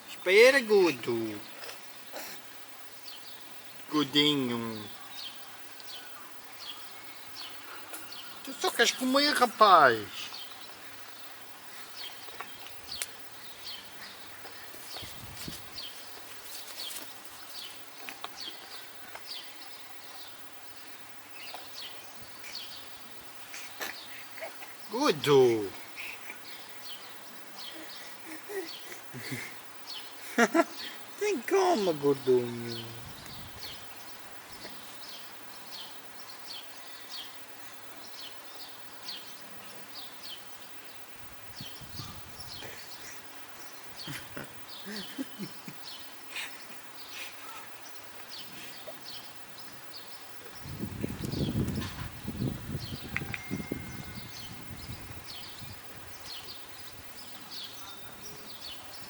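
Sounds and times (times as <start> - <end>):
small birds chirping: 0.0 - 59.0
steady background hiss: 0.0 - 59.0
faint clicks: 12.3 - 13.2.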